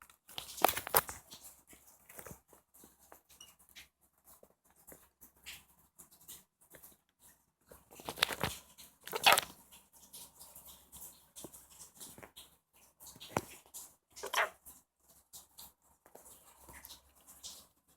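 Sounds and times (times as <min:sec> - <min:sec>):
lovebird mimicking sneeze: 0:14.2 - 0:14.6.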